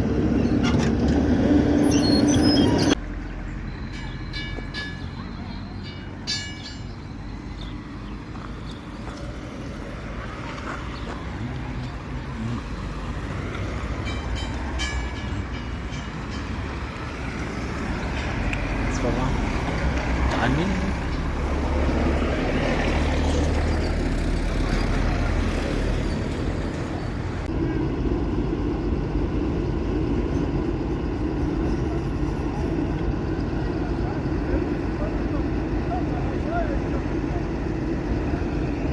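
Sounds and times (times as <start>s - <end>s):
heavy machinery engine rumbling: 0.0s - 38.9s
high-pitched metallic squeals: 1.8s - 7.5s.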